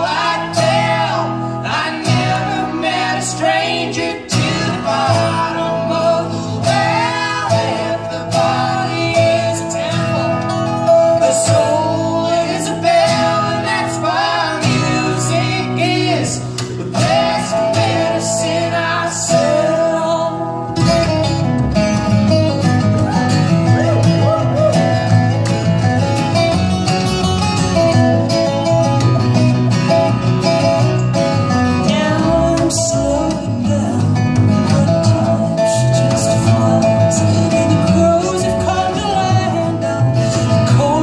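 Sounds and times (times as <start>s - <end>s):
bass line: 0.0s - 41.0s
picked acoustic guitar: 0.0s - 41.0s.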